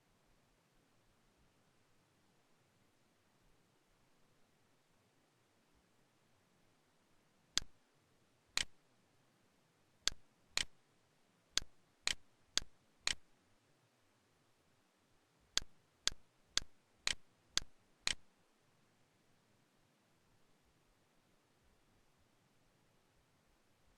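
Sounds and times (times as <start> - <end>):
mouse clicks: 7.6 - 7.8, 8.6 - 8.8, 10.1 - 10.8, 11.6 - 13.2, 15.5 - 18.3.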